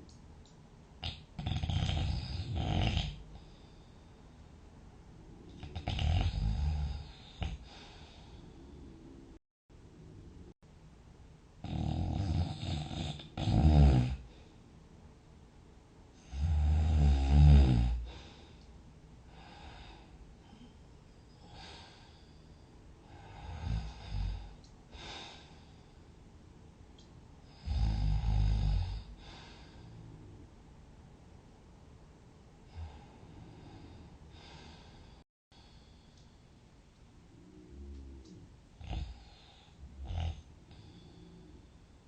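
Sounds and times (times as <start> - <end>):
person snoring: 1.0 - 3.6, 5.5 - 9.0, 11.6 - 14.3, 16.2 - 18.3, 23.1 - 25.6, 27.5 - 30.3, 37.4 - 41.7
sleep breathing: 5.5 - 9.4, 19.3 - 26.0, 27.5 - 30.3, 32.7 - 36.6, 37.4 - 42.0.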